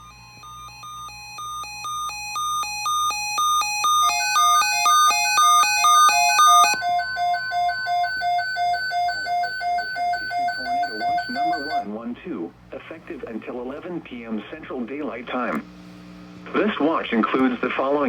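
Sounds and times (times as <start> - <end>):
alternating two-pitch beeps: 0.0 - 11.8.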